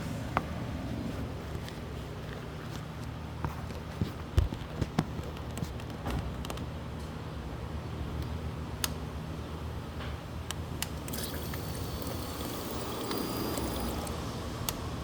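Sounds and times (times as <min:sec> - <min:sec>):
sharp clicks: 0:10.5 - 0:14.8.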